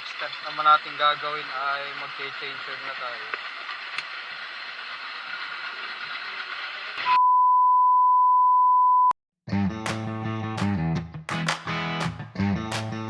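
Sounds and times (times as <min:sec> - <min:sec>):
steady hiss: 0:00.0 - 0:07.1
loud single-pitch beep: 0:07.0 - 0:09.2
guitar music: 0:09.5 - 0:13.0.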